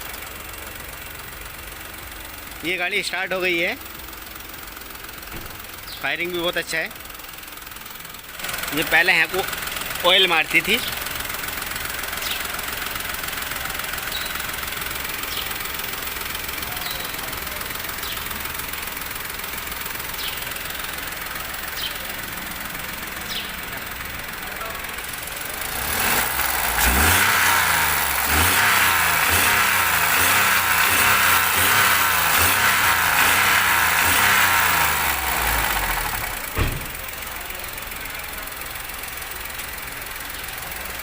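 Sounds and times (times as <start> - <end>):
car engine idling and revving: 0.0 - 41.0.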